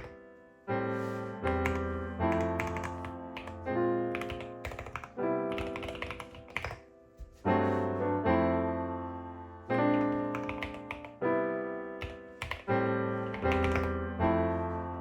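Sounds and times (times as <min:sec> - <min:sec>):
computer keyboard typing: 0:01.5 - 0:06.9, 0:09.9 - 0:11.2, 0:12.0 - 0:14.0.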